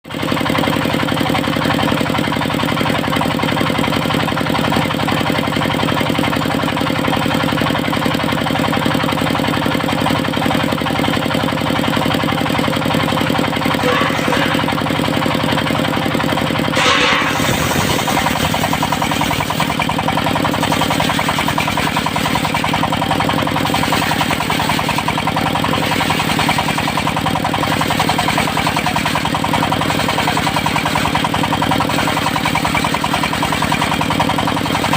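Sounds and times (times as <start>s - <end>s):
sawmill engine running: 0.1s - 34.9s
brief sharp noise: 13.8s - 14.9s, 16.8s - 19.5s.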